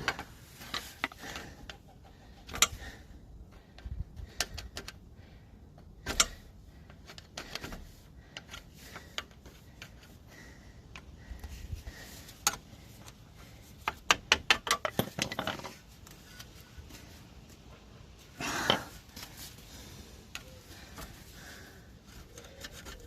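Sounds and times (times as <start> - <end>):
hand tools tapping on metal: 13.8 - 15.8.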